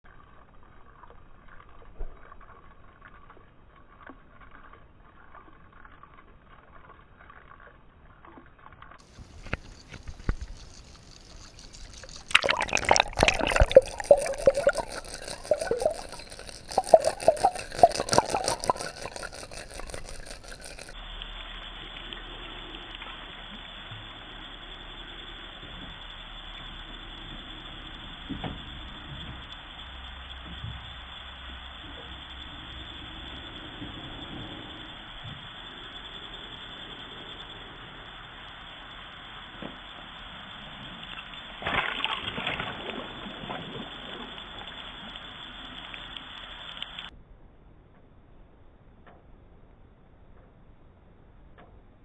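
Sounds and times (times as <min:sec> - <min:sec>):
water splashing and churning: 0:09.0 - 0:21.0, 0:41.6 - 0:44.1
steady hiss: 0:09.0 - 0:41.7.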